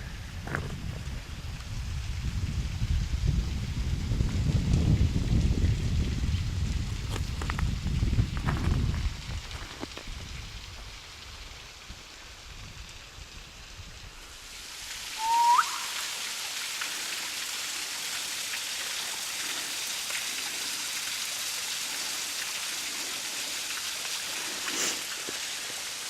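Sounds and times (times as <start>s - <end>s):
rain falling: 0.0s - 26.0s
upward sweeping whistle: 15.2s - 16.1s.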